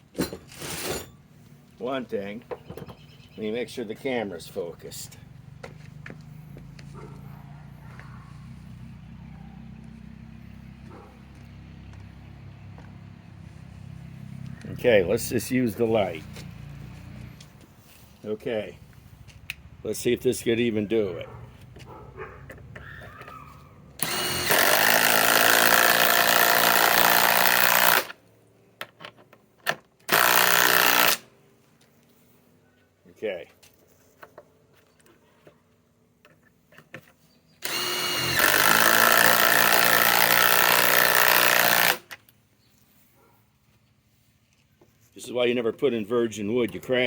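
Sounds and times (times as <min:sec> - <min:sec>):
soft rustle: 0:16.4 - 0:19.4, 0:42.6 - 0:45.2
impact driver hammering screw: 0:24.0 - 0:28.2, 0:30.1 - 0:31.3, 0:37.6 - 0:42.2.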